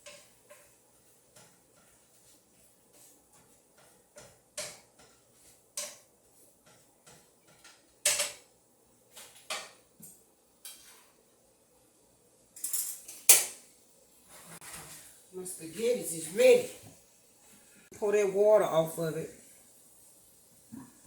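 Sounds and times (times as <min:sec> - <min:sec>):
pots and pans clattering: 0:03.4 - 0:08.5, 0:09.1 - 0:09.9.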